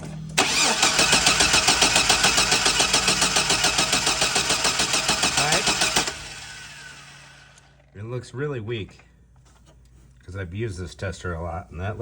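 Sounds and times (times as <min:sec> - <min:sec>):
car engine cranking on starter: 0:00.4 - 0:07.7.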